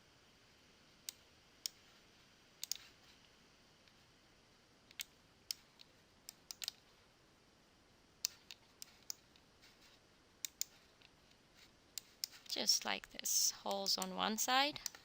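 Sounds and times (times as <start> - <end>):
faint computer mouse clicks: 1.0 - 1.8, 2.6 - 2.9, 4.9 - 6.8, 8.2 - 9.4, 10.4 - 11.1.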